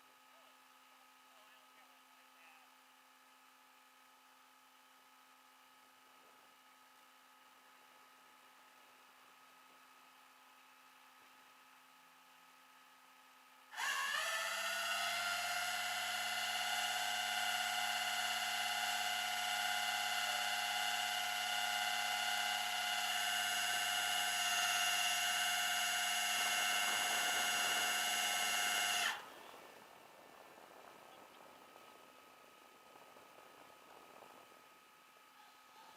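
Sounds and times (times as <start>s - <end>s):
small electric motor whining: 13.7s - 34.7s.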